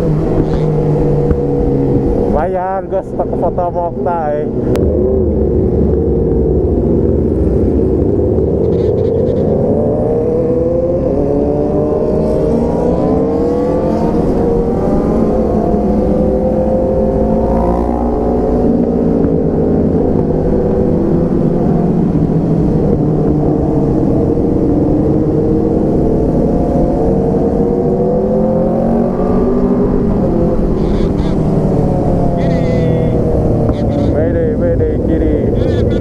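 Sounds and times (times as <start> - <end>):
motorcycle engine: 0.0 - 36.0.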